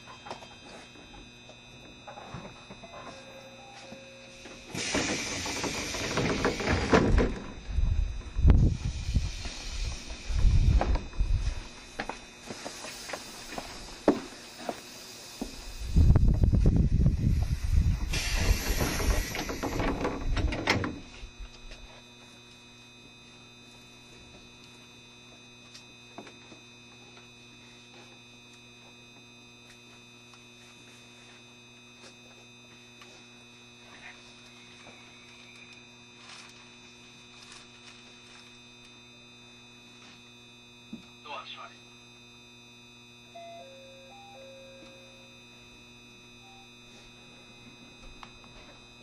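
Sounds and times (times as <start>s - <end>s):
electrical hum: 0.0s - 49.0s
electric train running and braking: 1.4s - 22.0s
air hiss: 4.4s - 7.1s, 8.6s - 20.3s.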